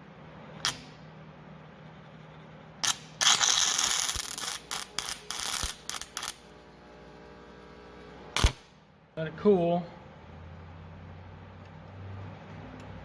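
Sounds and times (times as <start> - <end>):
welding electrode striking crack: 0.6 - 1.1, 2.8 - 6.5, 8.3 - 8.9
welding arc crackling hiss: 2.8 - 8.8.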